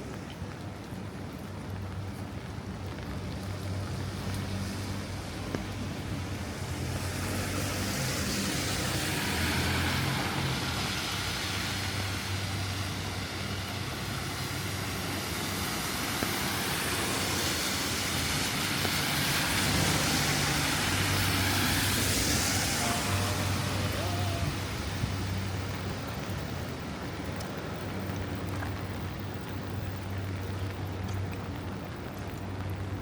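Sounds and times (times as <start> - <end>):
tyres hissing on wet asphalt: 3.4 - 32.2.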